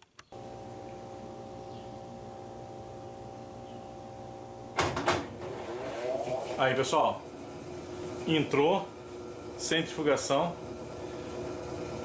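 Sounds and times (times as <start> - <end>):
washing machine humming: 0.4 - 12.0
clattering knocks: 4.8 - 5.4.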